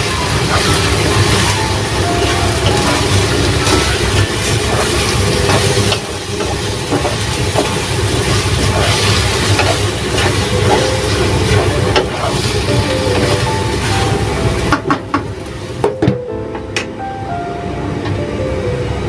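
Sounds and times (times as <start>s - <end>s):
food sizzling in a pan: 0.0s - 14.8s.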